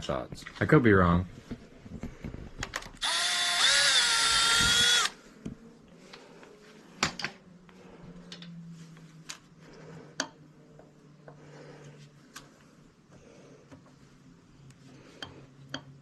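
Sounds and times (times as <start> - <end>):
cordless power tool whirring: 3.0 - 5.2.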